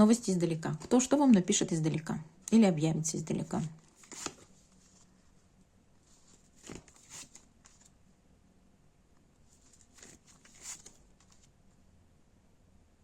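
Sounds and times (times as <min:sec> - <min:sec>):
cards rustling on a table: 0:03.8 - 0:05.1, 0:06.1 - 0:08.0, 0:09.5 - 0:11.5.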